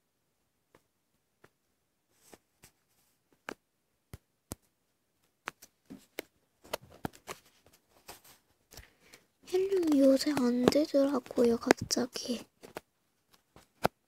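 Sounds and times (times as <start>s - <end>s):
fingers tapping touchscreen: 8.7s - 12.8s.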